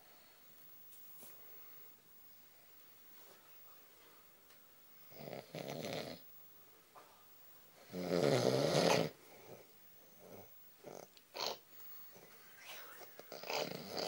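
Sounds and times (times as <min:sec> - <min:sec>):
person snoring: 0:10.4 - 0:14.0.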